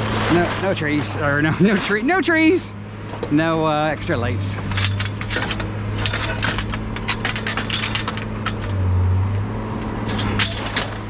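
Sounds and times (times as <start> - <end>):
scrap clicks and clatter: 0.0 - 2.2, 4.4 - 8.9, 9.8 - 11.0.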